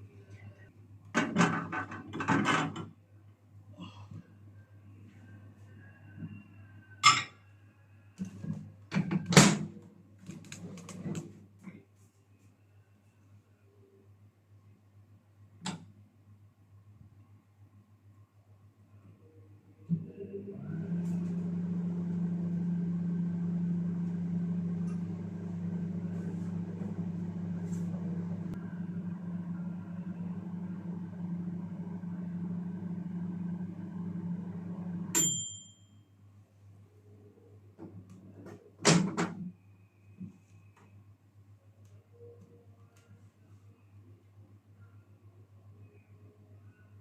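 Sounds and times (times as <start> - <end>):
microwave oven humming: 19.8 - 36.2
microwave timer ding: 35.1 - 36.1.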